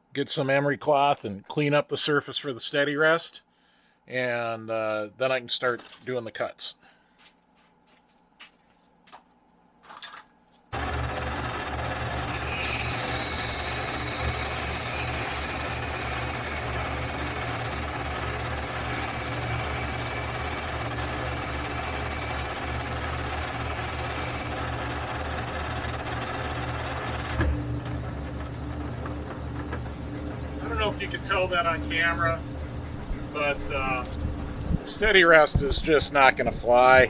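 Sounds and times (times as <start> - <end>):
lathe motor hum: 10.8 - 34.4
emery cloth hissing on shaft: 12.1 - 24.7.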